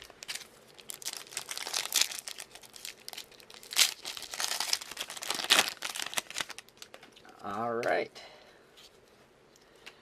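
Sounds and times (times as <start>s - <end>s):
foil wrapper crackles: 0.0s - 7.1s
foil wrapper crinkling: 0.0s - 7.2s.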